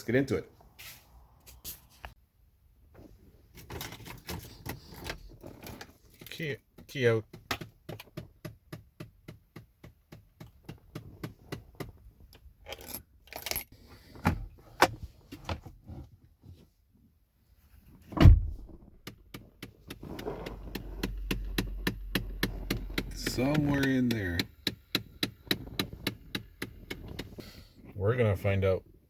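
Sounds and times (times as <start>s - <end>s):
keys jangling: 12.7s - 13.7s
loud thump: 18.2s - 19.0s
rapid ticking in car dashboard: 19.0s - 27.4s.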